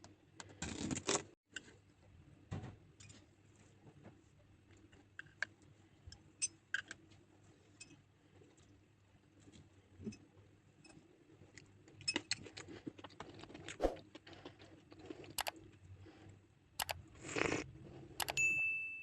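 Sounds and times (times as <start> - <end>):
tiny utensils crunching and clicking: 11.4 - 15.8.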